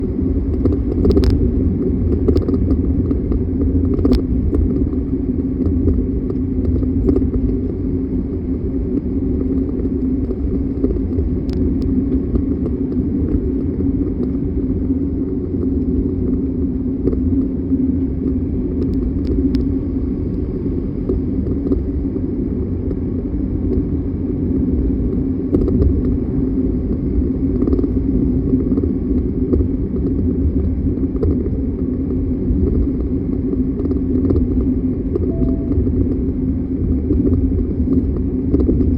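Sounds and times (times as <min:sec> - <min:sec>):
van engine low rumble: 0:00.0 - 0:38.9.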